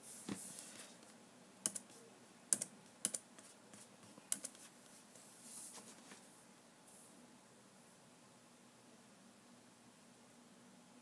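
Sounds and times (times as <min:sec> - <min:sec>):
computer clicking: 0:01.6 - 0:03.2, 0:04.3 - 0:04.6.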